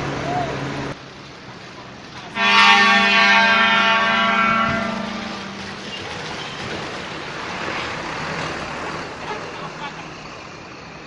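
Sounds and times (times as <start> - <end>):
traffic noise: 0.0 - 11.0
bus musical air horn: 2.3 - 5.9.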